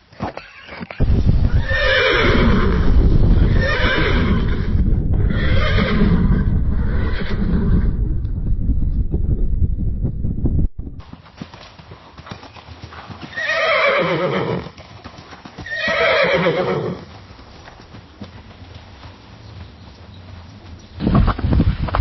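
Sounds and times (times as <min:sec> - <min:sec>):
low rumble: 0:01.0 - 0:11.1
horse whinnying: 0:01.6 - 0:07.8, 0:13.3 - 0:14.7, 0:15.6 - 0:17.0.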